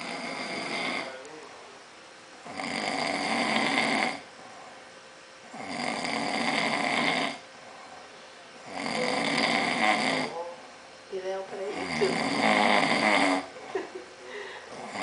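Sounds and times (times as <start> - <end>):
man snoring heavily: 0.0 - 1.2, 2.4 - 4.2, 5.4 - 7.4, 8.6 - 10.4, 11.7 - 13.5, 14.6 - 15.0.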